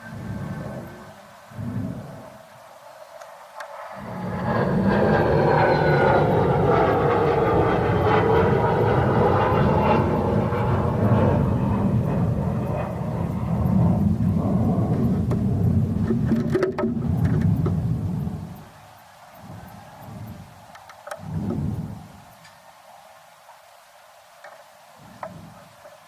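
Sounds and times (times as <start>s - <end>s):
high falling whine: 3.7s - 18.7s
machine running with low rumble: 4.0s - 18.7s.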